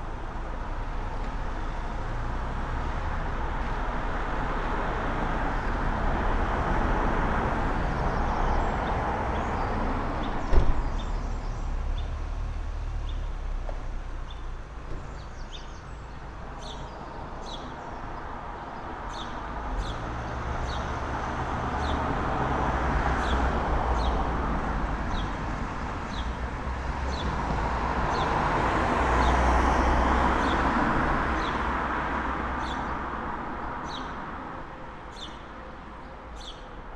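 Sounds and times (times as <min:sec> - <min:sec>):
cars passing: 0:00.0 - 0:36.9
low traffic rumble: 0:00.0 - 0:36.9
small birds chirping: 0:14.2 - 0:21.0, 0:25.1 - 0:25.4, 0:33.8 - 0:34.2, 0:35.1 - 0:36.8.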